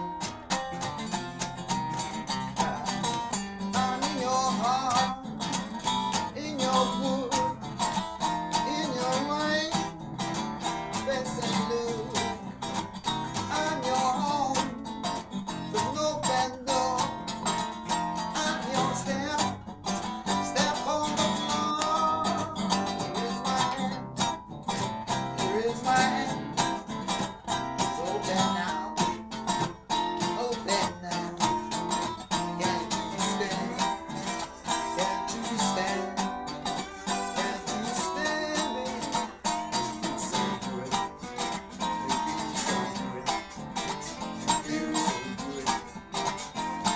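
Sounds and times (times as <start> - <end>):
blues band playing: 0.0 - 46.9
guitar bending notes: 0.0 - 46.9.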